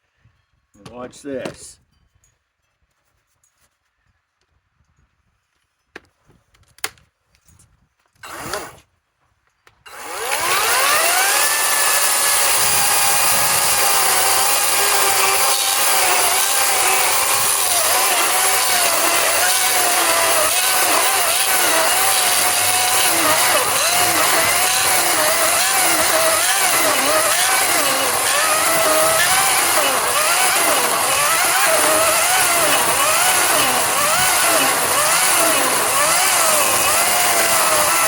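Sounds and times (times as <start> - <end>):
electric chainsaw cutting: 8.2 - 8.9, 9.9 - 38.0.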